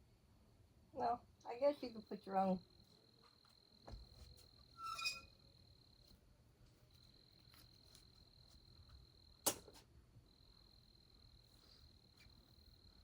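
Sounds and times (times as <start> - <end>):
high-pitched insect trill: 4.6 - 5.5
brief squeak: 4.8 - 5.3.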